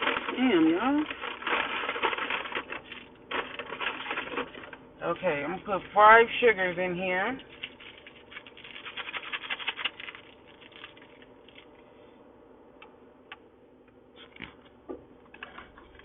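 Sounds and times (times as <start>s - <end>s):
paper sugar packets crackling: 0.0s - 11.8s.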